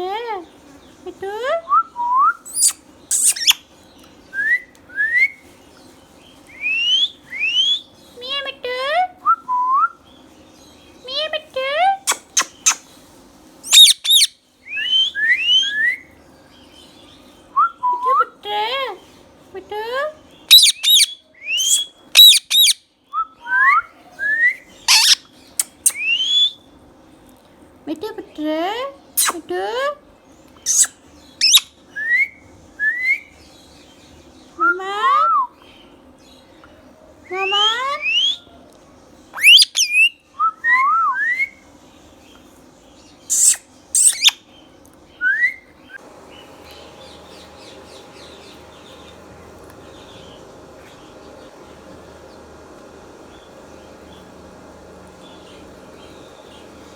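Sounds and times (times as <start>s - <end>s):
faint chirping: 2.3s - 8.4s, 12.1s - 17.6s, 20.3s - 22.8s, 35.5s - 40.4s, 41.4s - 56.9s
parakeet screeching and whistling: 2.5s - 3.6s, 13.7s - 15.9s, 20.5s - 22.8s, 24.9s - 25.2s, 30.6s - 31.7s, 39.4s - 40.2s, 43.3s - 44.4s
harsh parakeet squawk: 13.7s - 14.3s, 20.5s - 22.8s, 24.9s - 25.2s, 43.3s - 44.4s.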